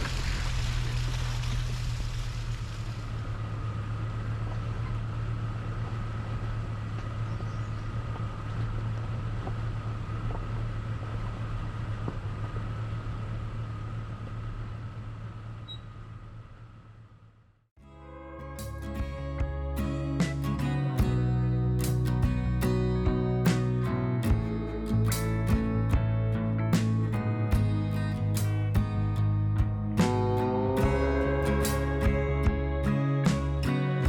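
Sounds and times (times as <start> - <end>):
vehicle engine drone: 0.0 - 34.0.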